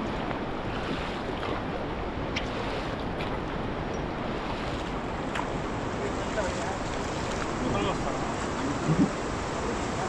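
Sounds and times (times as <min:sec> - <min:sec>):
faint splashes: 0:00.0 - 0:03.6
white-water river rushing: 0:00.0 - 0:10.0.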